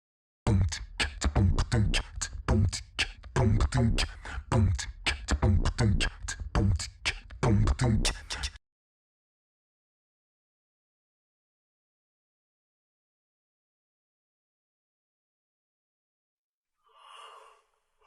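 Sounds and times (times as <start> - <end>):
beatbox beat: 0.5 - 8.6.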